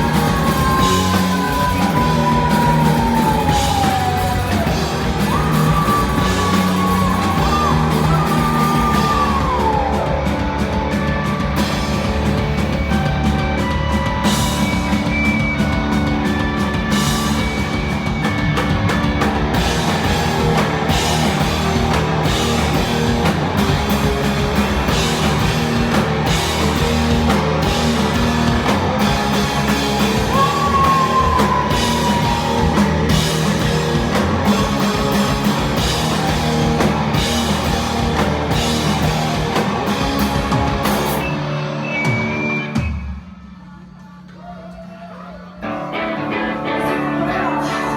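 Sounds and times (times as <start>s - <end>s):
person singing: 0.0s - 10.4s, 30.0s - 33.7s, 43.6s - 47.9s
rock band playing live: 0.0s - 43.3s, 45.6s - 47.9s.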